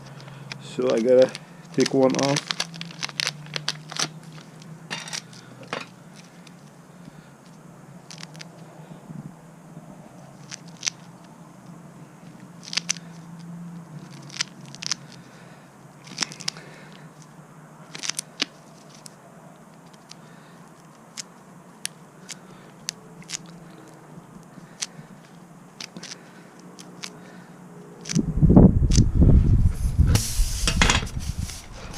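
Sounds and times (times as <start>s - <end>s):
sharp clicks and crackles: 0.0s - 6.8s, 7.4s - 8.7s, 10.3s - 11.3s, 12.3s - 15.3s, 16.0s - 17.3s, 17.9s - 28.2s, 28.9s - 29.1s.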